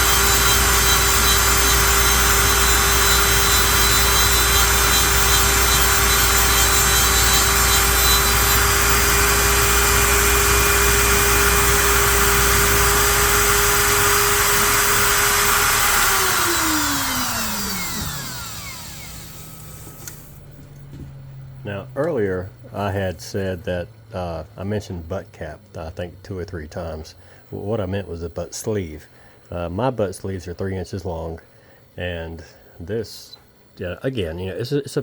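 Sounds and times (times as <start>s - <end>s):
cutter hissing on wood: 0.0s - 20.4s
lathe spindle whine: 0.0s - 22.7s.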